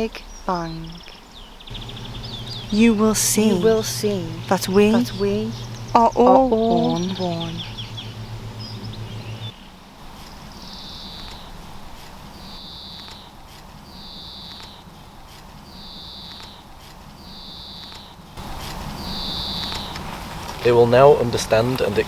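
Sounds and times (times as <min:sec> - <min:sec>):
faint background noise: 0:00.0 - 0:22.0
high-pitched chirp: 0:01.7 - 0:09.5
low hum: 0:01.7 - 0:09.6.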